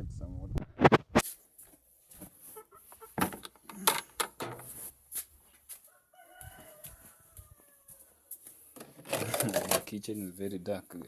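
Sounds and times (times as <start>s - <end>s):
rooster crowing: 5.9s - 8.4s.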